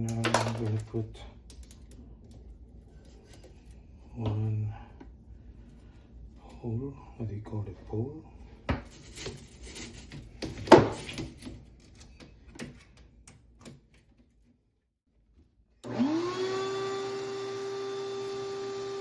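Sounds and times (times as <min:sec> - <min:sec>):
electric motor whine and hum: 0:15.8 - 0:19.0.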